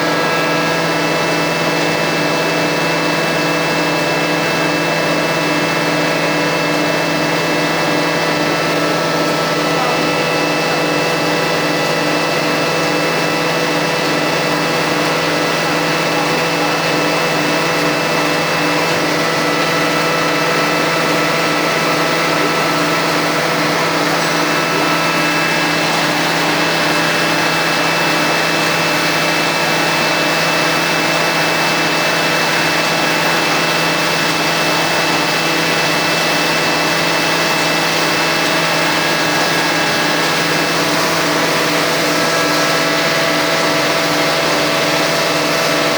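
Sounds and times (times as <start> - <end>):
lathe mechanical hum: 0.0 - 45.9.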